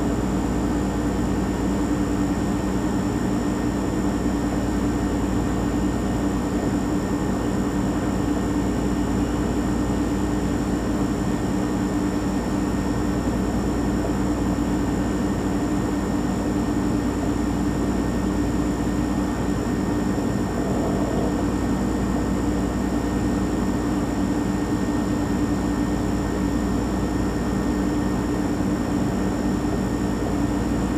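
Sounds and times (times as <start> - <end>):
refrigerator compressor hum: 0.0 - 30.9
thin high whine: 17.8 - 24.2.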